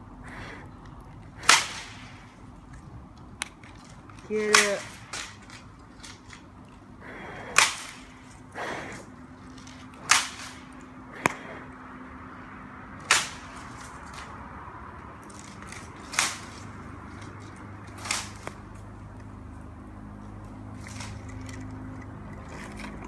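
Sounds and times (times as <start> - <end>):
campfire hissing: 0.0 - 2.5, 6.5 - 12.2
bamboo popping in fire: 0.4 - 6.6.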